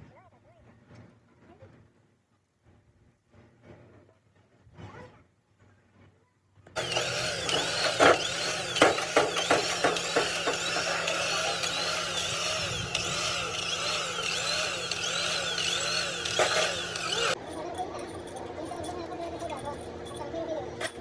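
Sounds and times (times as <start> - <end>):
power tool running on metal: 6.8 - 21.0.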